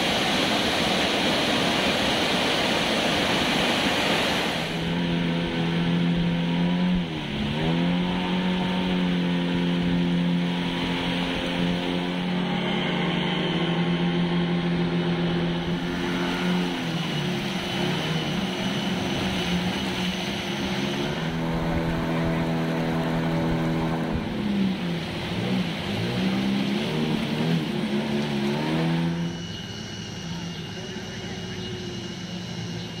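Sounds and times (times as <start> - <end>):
engine running: 0.0 - 33.0.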